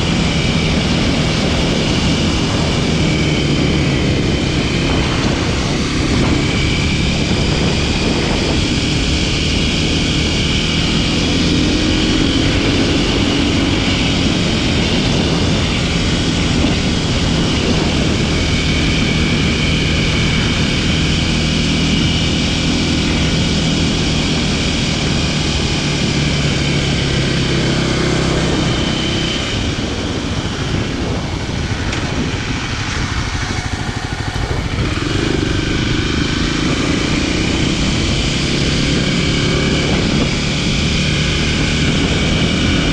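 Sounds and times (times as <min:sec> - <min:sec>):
motorcycle engine cruising: 0:00.0 - 0:42.9.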